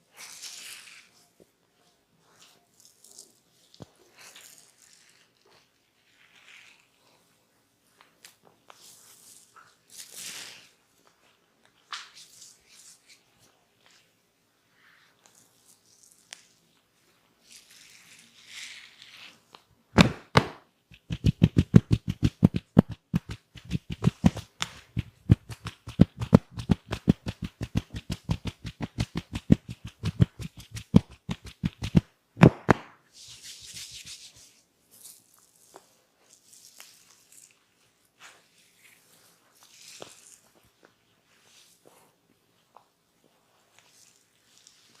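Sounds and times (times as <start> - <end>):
soft rubbing hisses: 0.0 - 19.6, 20.9 - 32.0, 33.1 - 45.0
hands tapping and slapping on body: 20.0 - 33.0.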